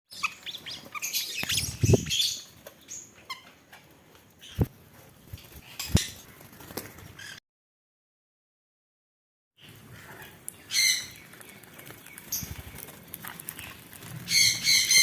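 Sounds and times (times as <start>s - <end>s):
birds chirping: 0.1s - 4.8s, 9.6s - 15.0s
birds rustling: 0.2s - 7.4s, 9.6s - 15.0s.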